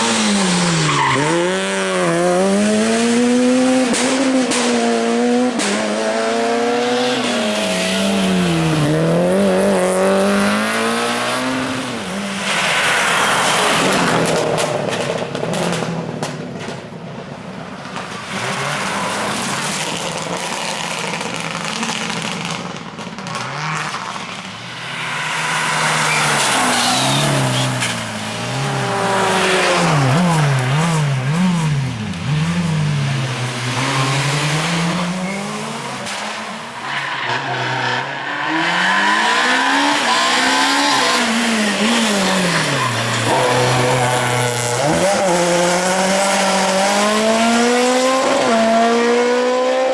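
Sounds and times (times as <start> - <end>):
rally car engines revving: 0.0 - 16.9, 17.8 - 49.9
tyre squeal: 25.0 - 31.0.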